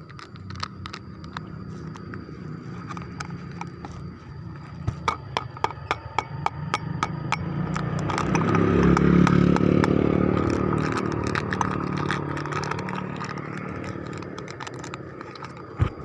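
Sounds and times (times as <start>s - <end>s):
motor running: 0.0s - 16.0s.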